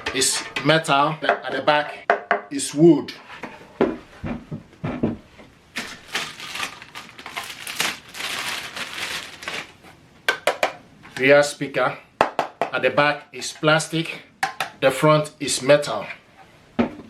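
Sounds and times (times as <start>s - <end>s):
packaging crinkling and rustling: 5.8s - 9.9s.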